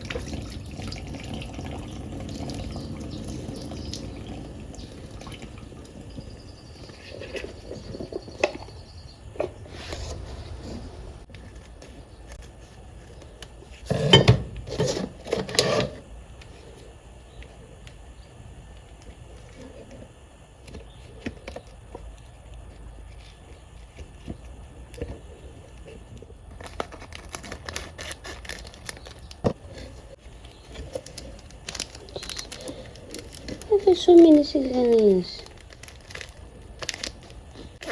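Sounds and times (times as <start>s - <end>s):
plastic packaging rustling and tearing: 20.7s - 37.9s.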